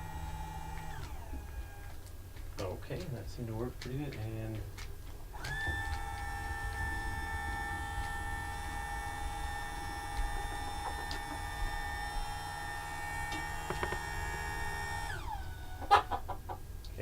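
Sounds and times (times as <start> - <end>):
electric motor whining: 0.0 - 2.2, 5.3 - 16.2
faint clicks: 3.8 - 6.8.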